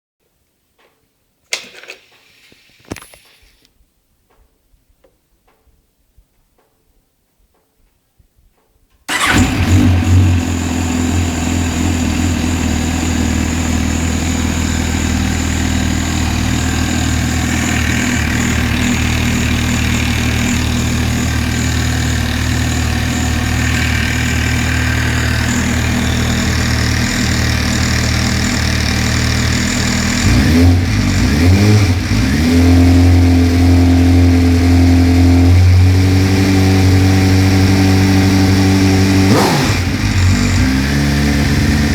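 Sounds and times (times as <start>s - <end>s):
motorcycle engine idling: 9.1s - 41.9s.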